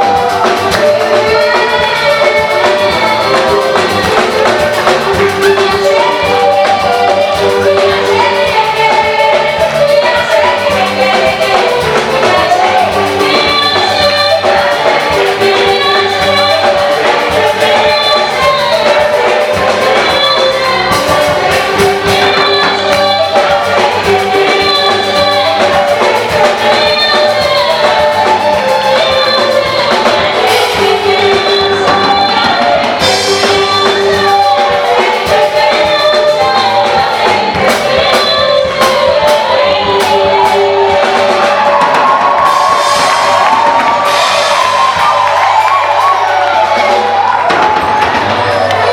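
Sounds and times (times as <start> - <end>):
band with drums: 0.0 - 48.9
group singing in harmony: 0.0 - 48.9.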